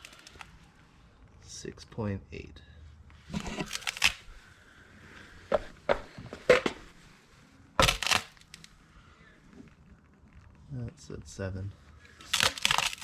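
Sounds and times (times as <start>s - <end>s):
crinkling rustling clatter: 0.0s - 0.6s, 3.2s - 4.3s, 12.2s - 13.0s.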